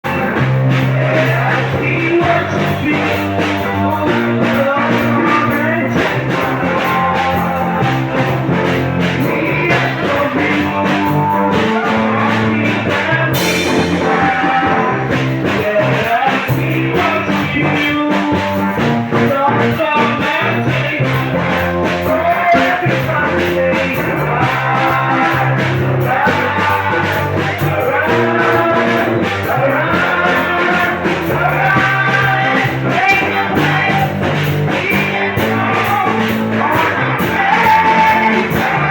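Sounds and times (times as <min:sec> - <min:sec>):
band with guitar and bass: 0:00.0 - 0:38.9
voices singing: 0:00.0 - 0:38.9.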